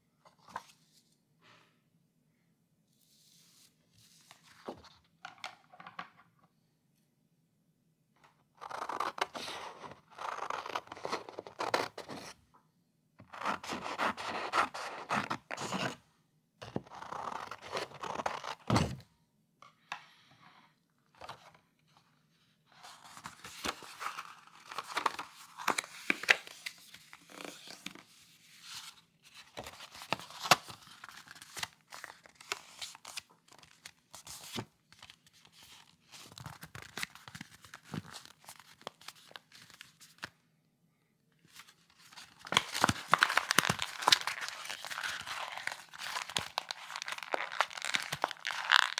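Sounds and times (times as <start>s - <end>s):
paper crumpling: 42.5s - 48.9s.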